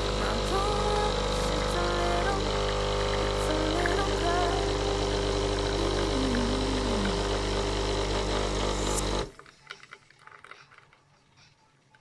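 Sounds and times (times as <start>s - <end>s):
coffee machine pump humming: 0.0s - 9.4s.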